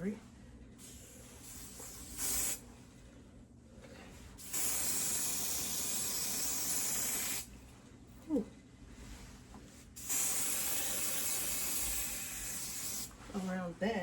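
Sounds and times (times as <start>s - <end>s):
hairspray can spraying: 0.8s - 2.6s, 4.4s - 7.5s, 10.0s - 13.5s.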